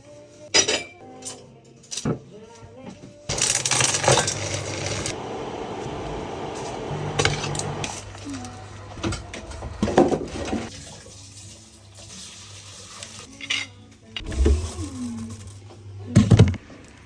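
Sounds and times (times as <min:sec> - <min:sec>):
dishes and cutlery clattering: 0:00.5 - 0:02.2.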